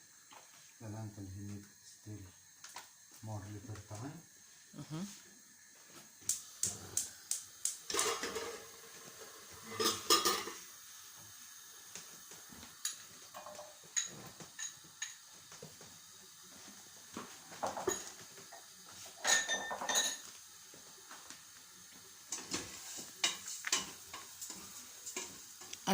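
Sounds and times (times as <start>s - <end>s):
utensils and dishes clattering: 7.9s - 10.6s, 12.8s - 15.2s, 17.6s - 20.3s, 22.3s - 25.7s.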